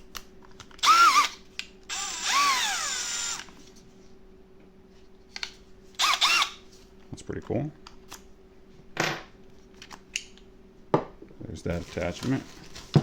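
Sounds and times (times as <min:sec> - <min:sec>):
cordless drill motor whine: 0:00.8 - 0:03.6, 0:06.0 - 0:06.6.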